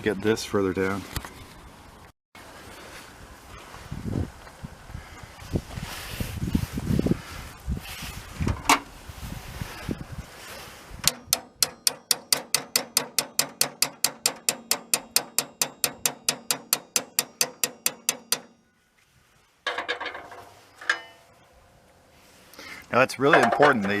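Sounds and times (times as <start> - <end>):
hammer tapping on metal: 11.1 - 18.6
handling clatter: 19.6 - 21.4, 23.3 - 24.0.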